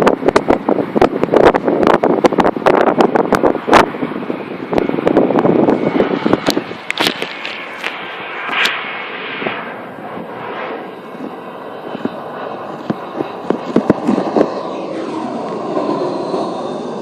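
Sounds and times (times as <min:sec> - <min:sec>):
jet airliner passing: 0:00.0 - 0:17.0.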